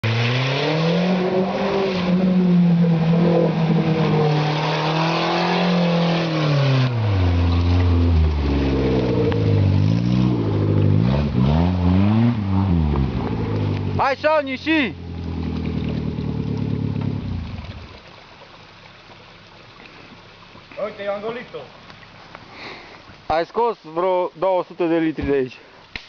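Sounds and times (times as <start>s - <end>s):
engine revving: 0.0s - 14.0s.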